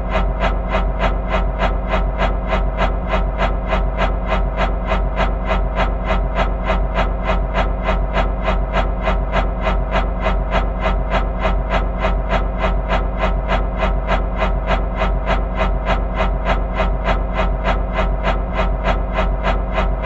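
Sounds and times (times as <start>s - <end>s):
low hum: 8.5s - 20.0s.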